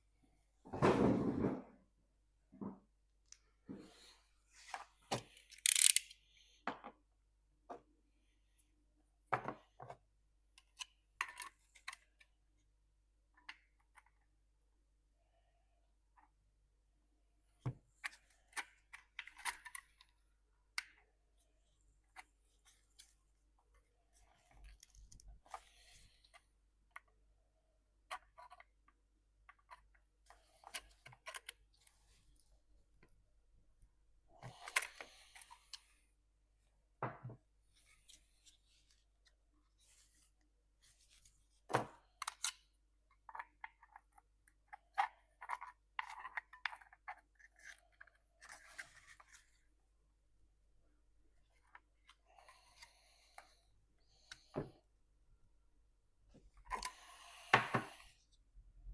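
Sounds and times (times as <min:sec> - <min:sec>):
parts clicking and knocking: 0:05.1 - 0:07.0.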